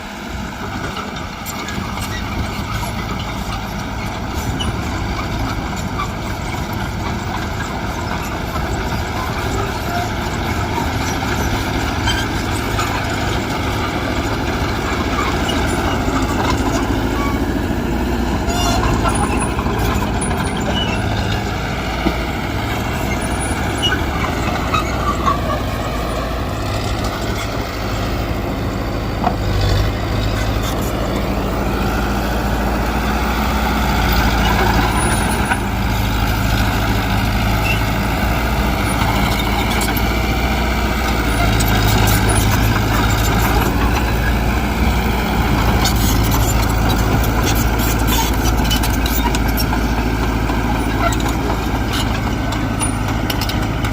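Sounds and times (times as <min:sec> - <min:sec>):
heavy machinery diesel engine: 0:00.0 - 0:53.9.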